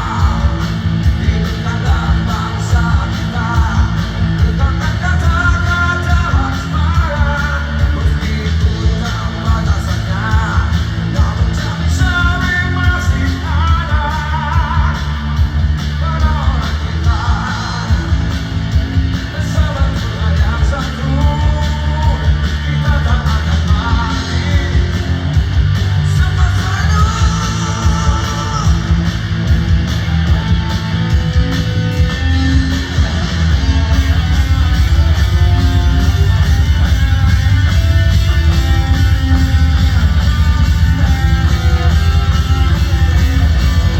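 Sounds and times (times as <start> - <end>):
person singing: 0.0 - 18.4, 19.2 - 25.3, 25.9 - 29.0
bass guitar: 0.0 - 43.9
drums: 0.0 - 43.9
electric guitar: 0.0 - 43.9.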